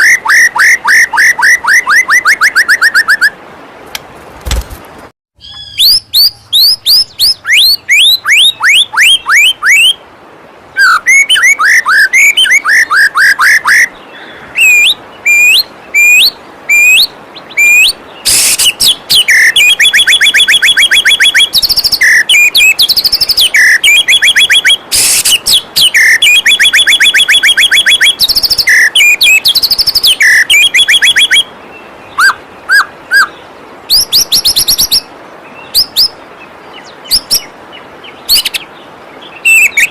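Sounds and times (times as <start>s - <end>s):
bird whistles and trills: 5.4s - 10.0s, 10.8s - 31.5s, 32.1s - 36.2s, 37.0s - 37.5s, 38.2s - 38.7s, 39.3s - 39.9s
falling water rushing: 6.9s - 39.9s.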